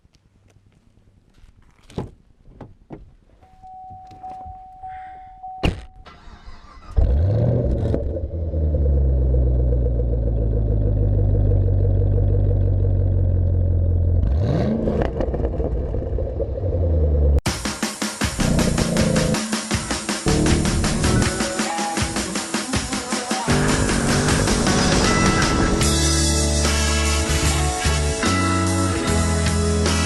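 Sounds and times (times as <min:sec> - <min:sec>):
car engine starting and idling: 0:05.4 - 0:17.4, 0:20.3 - 0:21.4, 0:23.5 - 0:28.2
steady electronic tone: 0:23.5 - 0:27.6.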